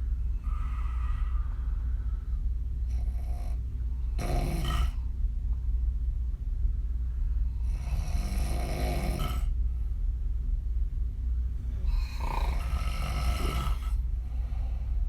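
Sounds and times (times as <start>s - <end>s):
steady low hum: 0.0s - 15.0s
woman snoring: 4.1s - 5.0s, 7.7s - 9.5s, 11.7s - 14.0s.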